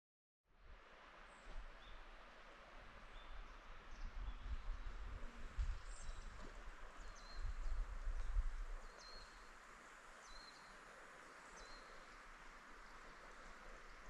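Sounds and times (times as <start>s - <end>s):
faint outdoor hiss: 0.5s - 14.0s
wind rumbling on microphone: 2.8s - 10.5s.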